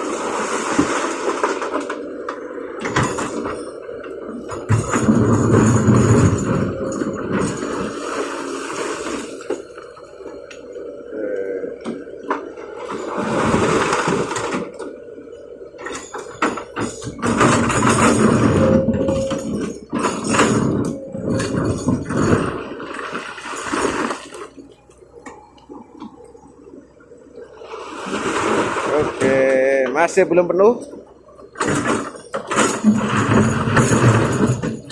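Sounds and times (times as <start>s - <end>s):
excavator engine hum: 0.0s - 34.9s
rocks clattering into truck bed: 4.5s - 9.9s, 15.8s - 24.6s, 31.4s - 34.9s.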